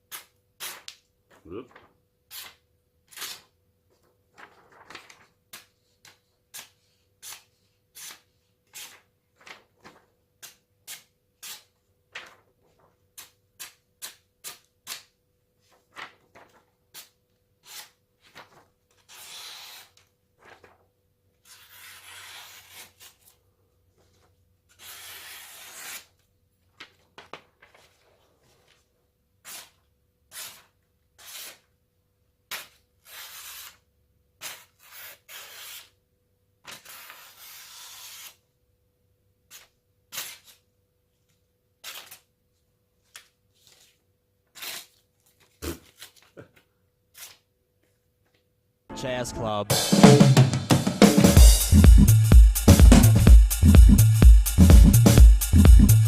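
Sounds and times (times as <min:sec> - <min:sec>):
knife slicing paper: 0:00.1 - 0:00.9, 0:02.3 - 0:03.5, 0:04.8 - 0:09.1, 0:10.4 - 0:12.4, 0:16.9 - 0:20.6, 0:21.4 - 0:23.4, 0:24.7 - 0:26.1, 0:29.4 - 0:31.7, 0:32.5 - 0:33.8, 0:34.4 - 0:35.9, 0:36.6 - 0:38.4, 0:39.5 - 0:40.6, 0:44.5 - 0:46.3.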